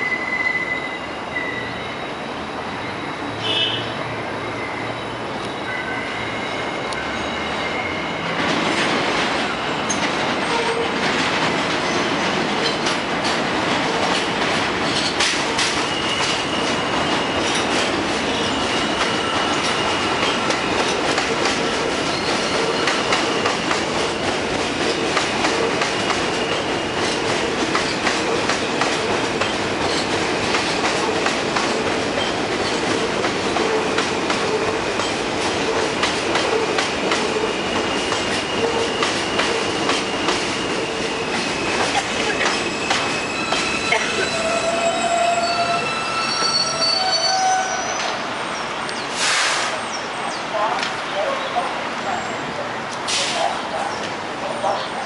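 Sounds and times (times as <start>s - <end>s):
high wheel squeal: 0.0s - 8.4s, 15.6s - 20.8s, 37.4s - 50.4s
train wheels clacking over joints: 8.2s - 44.3s.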